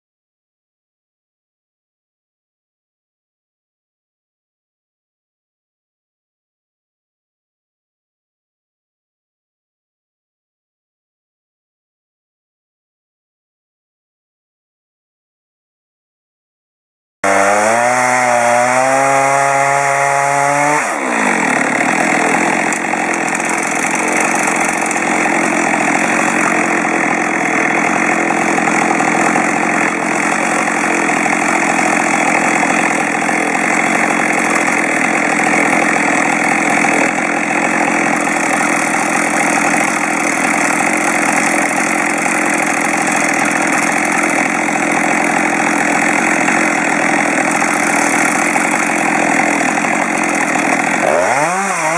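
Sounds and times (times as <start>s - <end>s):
chainsaw cutting wood: 17.2s - 51.9s
chainsaw revving: 17.2s - 51.9s.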